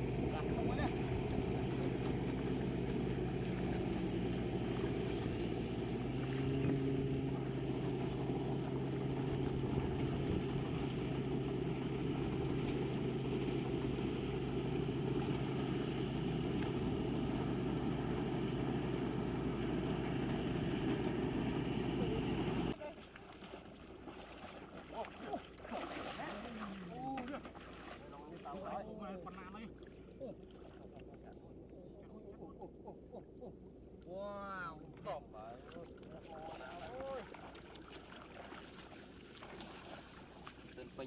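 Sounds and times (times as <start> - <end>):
tractor engine running: 0.0 - 22.8.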